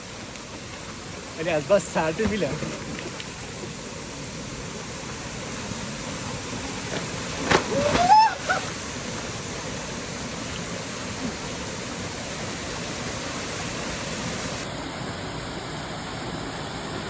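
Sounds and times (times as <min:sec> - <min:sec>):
person shouting: 0:07.7 - 0:08.7.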